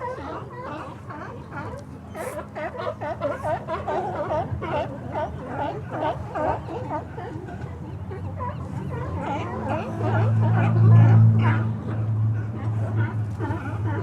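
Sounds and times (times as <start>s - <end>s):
sea lions barking: 0.0s - 7.4s.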